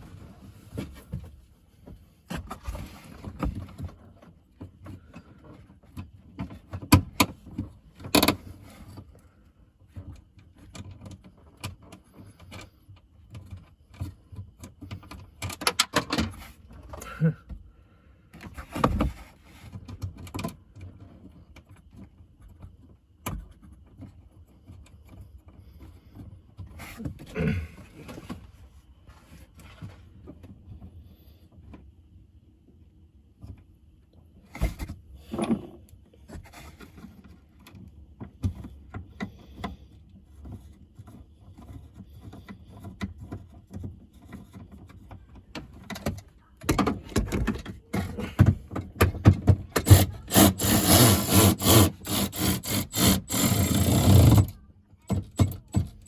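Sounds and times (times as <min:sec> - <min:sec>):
tools knocking scraping and rattling: 0:45.6 - 0:56.0.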